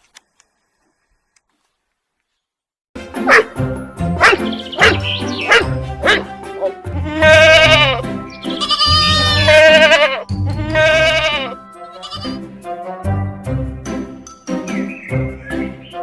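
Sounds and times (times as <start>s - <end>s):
background music with low beat: 3.0s - 16.0s
goat or sheep bleating: 6.9s - 12.4s.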